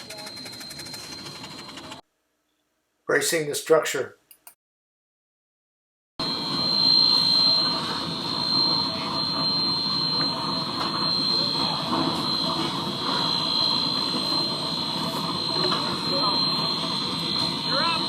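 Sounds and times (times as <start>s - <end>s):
high-pitched machinery whine: 0.0s - 2.0s, 6.2s - 18.0s.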